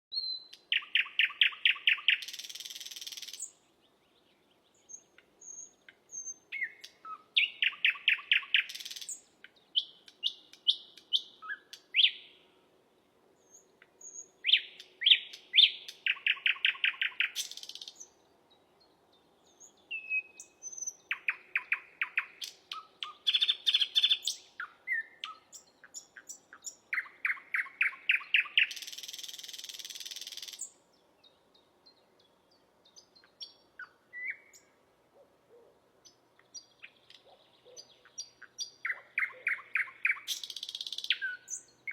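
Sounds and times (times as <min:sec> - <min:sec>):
bird singing repeated notes: 0:04.8 - 0:12.4, 0:19.5 - 0:32.3, 0:36.0 - 0:41.9.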